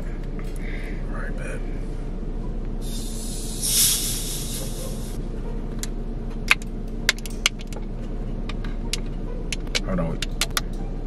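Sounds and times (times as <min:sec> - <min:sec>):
soda hissing from bottle: 0:02.8 - 0:05.2.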